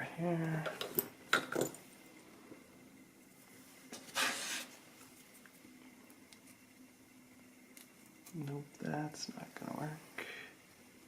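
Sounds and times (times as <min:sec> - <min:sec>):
metal scrape: 0:04.0 - 0:04.8.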